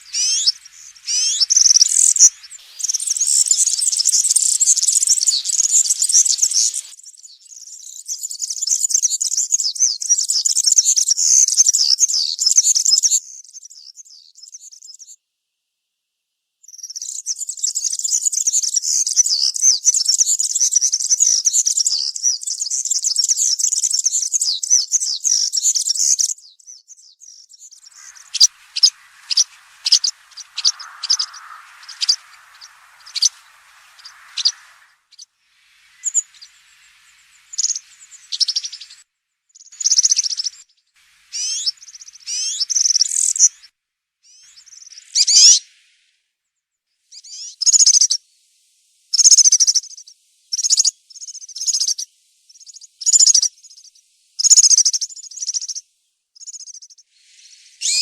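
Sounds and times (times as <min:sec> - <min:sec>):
bird singing jingling song: 0:00.0 - 0:09.6, 0:27.6 - 0:35.2, 0:35.8 - 0:39.0.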